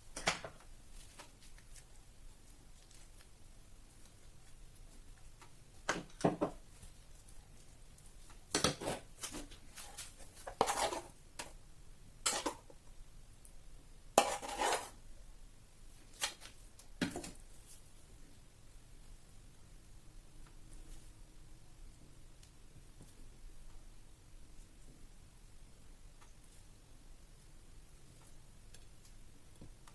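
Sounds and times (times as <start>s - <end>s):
dishes clinking and scraping: 14.2s - 15.0s.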